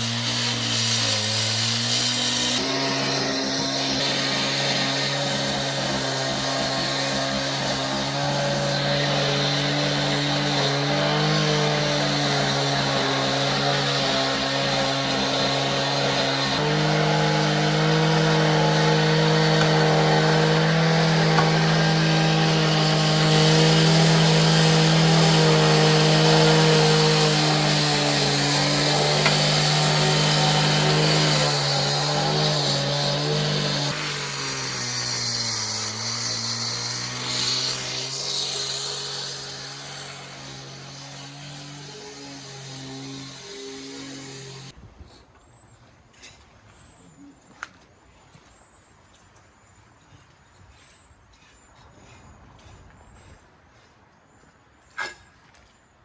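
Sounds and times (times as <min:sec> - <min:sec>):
concrete saw engine: 0:00.0 - 0:44.8.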